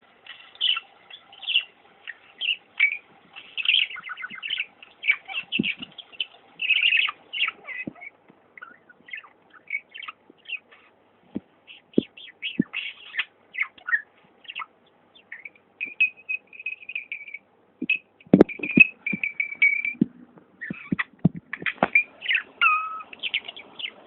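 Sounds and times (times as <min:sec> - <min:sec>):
pet squeaky chirps: 0:00.3 - 0:10.9, 0:11.7 - 0:24.0
low thumps: 0:17.8 - 0:22.0.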